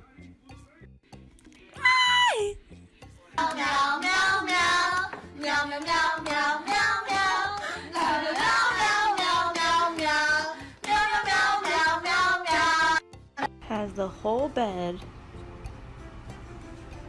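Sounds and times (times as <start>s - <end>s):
high voice singing wordless melody: 1.7s - 2.6s.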